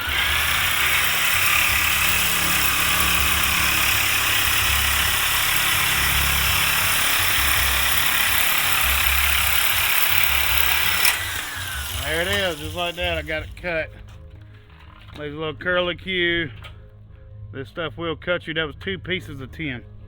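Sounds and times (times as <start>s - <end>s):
power shears cutting sheet metal: 0.0s - 13.8s.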